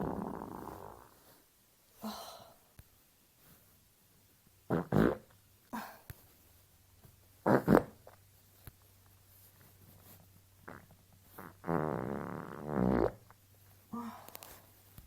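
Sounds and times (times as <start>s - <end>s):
human farts: 0.0s - 1.2s, 4.7s - 5.4s, 7.4s - 8.2s, 10.6s - 13.4s.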